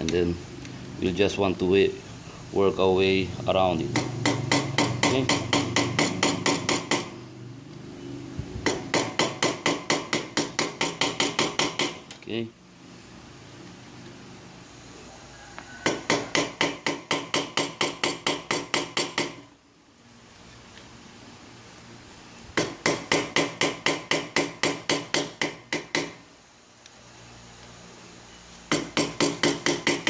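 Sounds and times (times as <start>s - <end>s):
hammer tapping chisel on metal: 3.8s - 7.2s, 8.6s - 12.3s, 15.8s - 19.5s, 22.6s - 26.2s, 28.7s - 30.0s.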